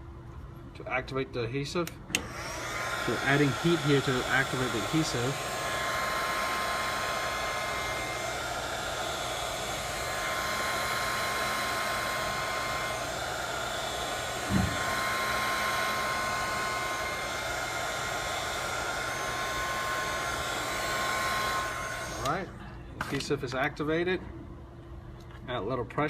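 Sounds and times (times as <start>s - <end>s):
heat gun blowing with whine: 2.1s - 22.5s
low thump: 14.5s - 14.8s.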